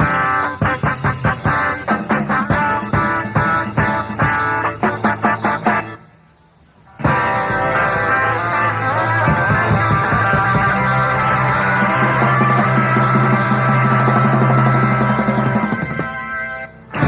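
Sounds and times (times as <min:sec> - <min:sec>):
bass notes: 0:00.0 - 0:06.0, 0:07.0 - 0:17.0
electric guitar chords: 0:00.0 - 0:06.1, 0:06.9 - 0:17.0
drum rolls and hits: 0:07.0 - 0:16.2.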